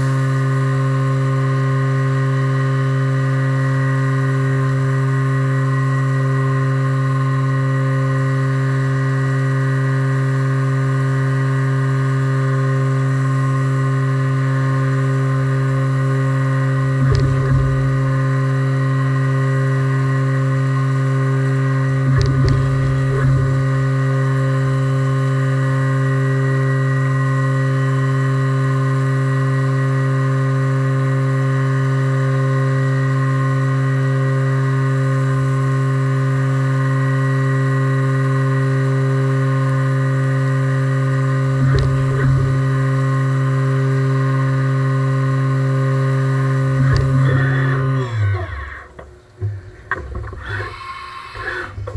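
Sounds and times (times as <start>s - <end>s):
milling machine spindle whine: 0.0s - 51.9s
low rumbles: 17.0s - 18.9s, 22.1s - 24.4s, 41.6s - 42.9s, 46.8s - 51.9s.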